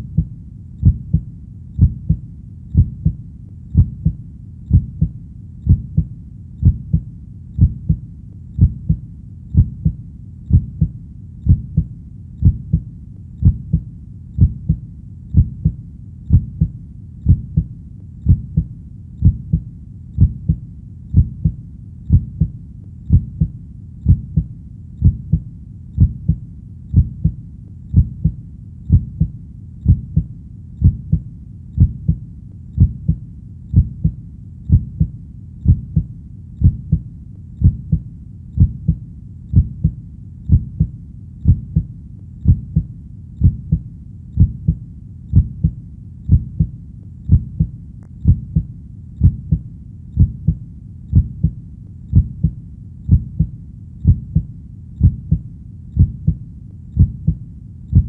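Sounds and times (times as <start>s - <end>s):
heartbeat thumps: 0.0s - 58.0s
low continuous rumble: 0.0s - 58.0s.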